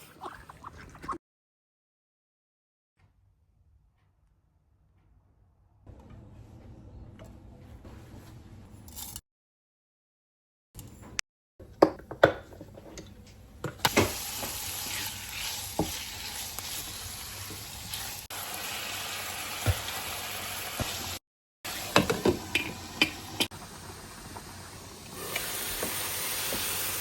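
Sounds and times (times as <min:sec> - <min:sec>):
food sizzling in a pan: 0:13.9 - 0:27.0.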